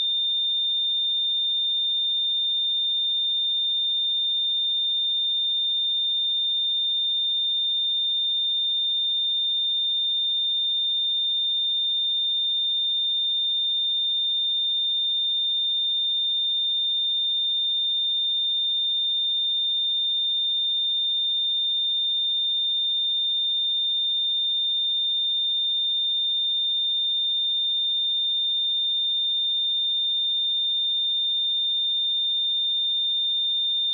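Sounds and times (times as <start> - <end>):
high-pitched sine test tone: 20.4 - 33.9.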